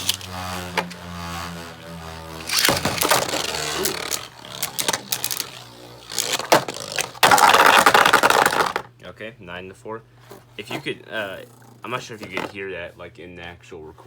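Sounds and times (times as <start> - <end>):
loud dense rattle: 0.0 - 8.8
spinning tops clashing: 0.0 - 8.8
clicks and knocks of tops: 2.4 - 8.9.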